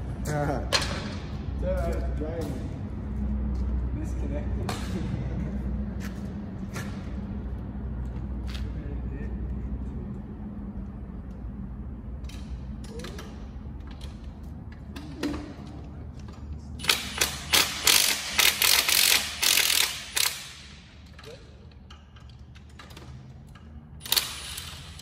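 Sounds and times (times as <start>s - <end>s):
ratchet wrench clicking: 16.8s - 25.0s.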